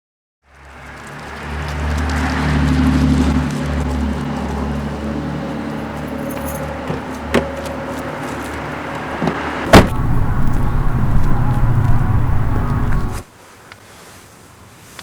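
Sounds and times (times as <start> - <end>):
vehicle engine running: 0.6 - 13.3
loud knock: 9.3 - 11.4.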